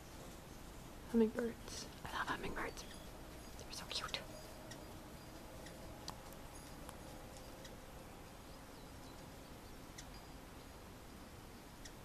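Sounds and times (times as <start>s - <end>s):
faint bird chirps: 0.0s - 12.0s
low outdoor background: 0.0s - 12.0s.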